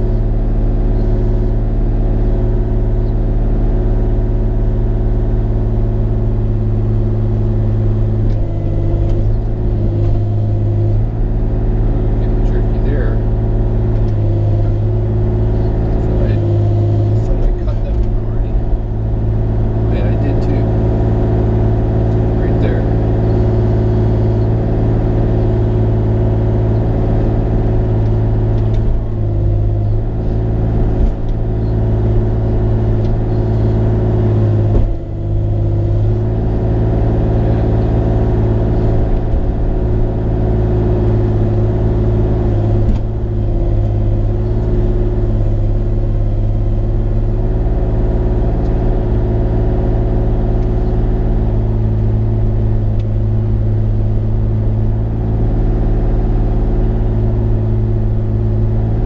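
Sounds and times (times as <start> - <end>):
excavator diesel engine running: 0.0 - 59.0.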